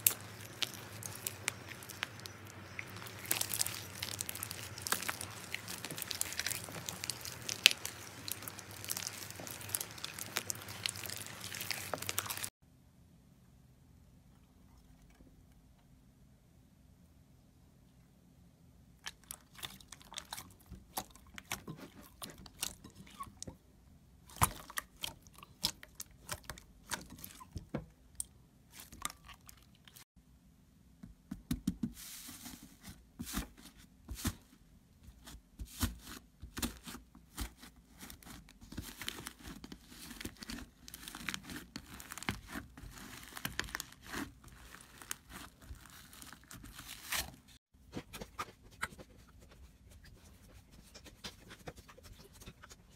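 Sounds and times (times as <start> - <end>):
slime crackling and popping: 0.0 - 12.5, 36.5 - 47.6.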